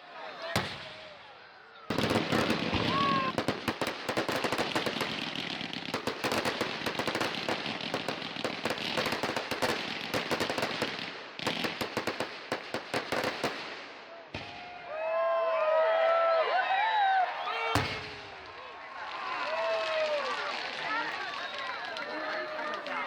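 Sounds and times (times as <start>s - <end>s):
fireworks crackling: 0.2s - 14.6s, 17.5s - 23.0s.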